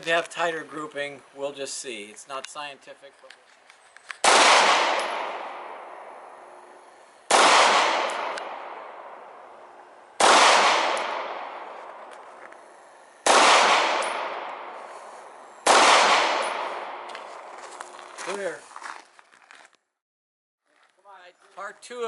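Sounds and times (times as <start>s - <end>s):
pistol shots with echo: 4.2s - 6.4s, 7.3s - 9.5s, 10.1s - 12.1s, 13.2s - 14.8s, 15.6s - 17.1s.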